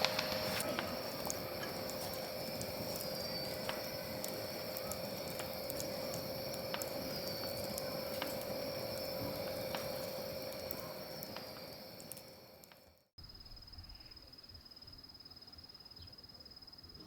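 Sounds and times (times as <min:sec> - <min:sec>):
wood fire crackling and popping: 0:00.0 - 0:13.0
stove fan humming: 0:00.0 - 0:13.1.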